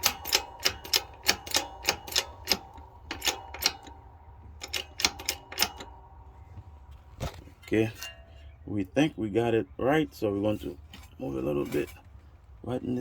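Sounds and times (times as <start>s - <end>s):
sharp irregular clicks and taps: 0.0s - 4.0s
steady low hum: 0.0s - 13.0s.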